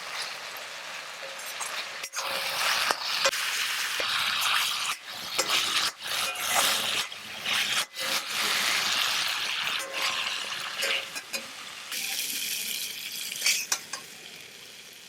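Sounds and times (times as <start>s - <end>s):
vegetables sizzling in a pan: 0.0s - 15.0s
spatula scraping pan: 1.2s - 11.5s.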